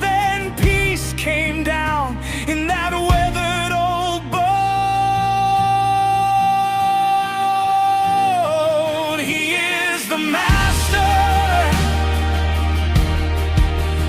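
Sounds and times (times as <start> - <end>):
person singing with vibrato: 0.0 - 14.0
low bass accompaniment: 10.5 - 14.0.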